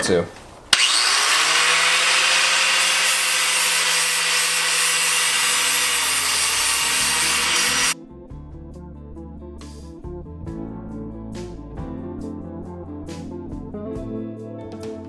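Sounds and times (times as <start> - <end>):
grinder grinding metal: 0.7 - 8.0.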